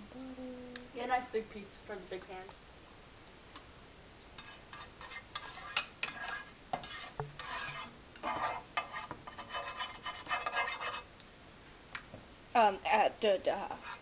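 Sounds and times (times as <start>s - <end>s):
utensil scraping and clinking on pan: 4.4s - 11.1s, 13.7s - 14.0s.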